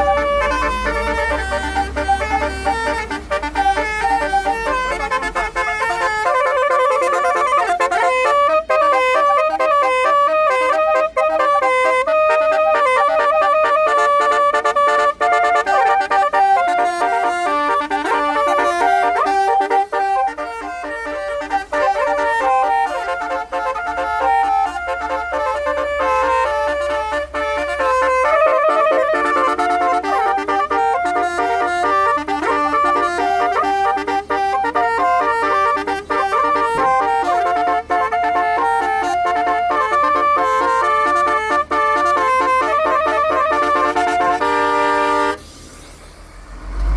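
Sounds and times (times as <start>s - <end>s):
musical air horn playing a tune: 0.0s - 46.9s
low rumble: 46.1s - 46.9s.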